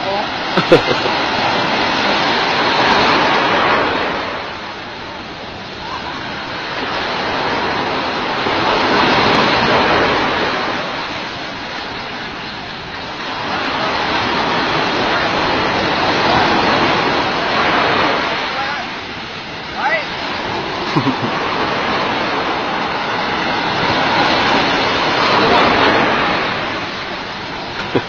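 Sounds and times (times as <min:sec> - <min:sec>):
ocean waves breaking on beach: 0:00.0 - 0:28.0.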